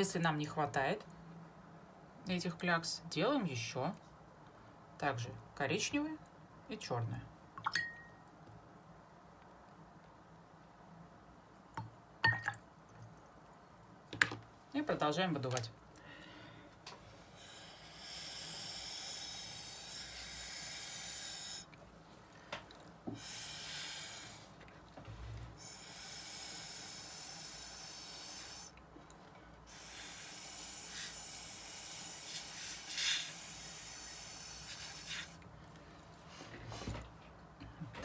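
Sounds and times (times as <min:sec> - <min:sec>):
airy blowing through a straw: 0:17.3 - 0:21.7, 0:23.2 - 0:24.6, 0:25.5 - 0:28.8, 0:29.7 - 0:35.4.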